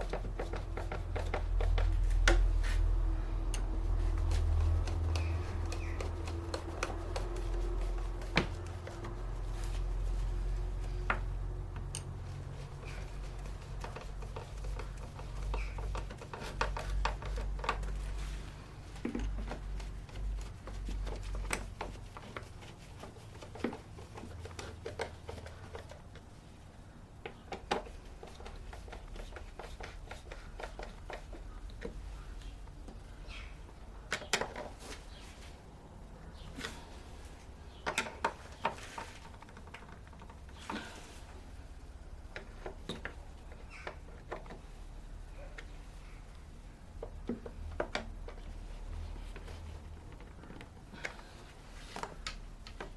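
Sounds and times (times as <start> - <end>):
clicks and taps on plastic: 0.0 - 2.6, 13.3 - 18.1, 27.2 - 32.0, 47.0 - 48.5
hands handling plastic parts: 0.0 - 26.6
steady low hum: 0.0 - 34.1.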